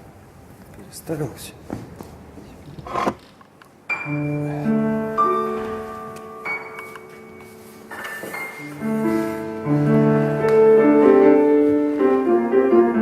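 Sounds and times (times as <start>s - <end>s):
grand piano chords: 3.8s - 13.0s.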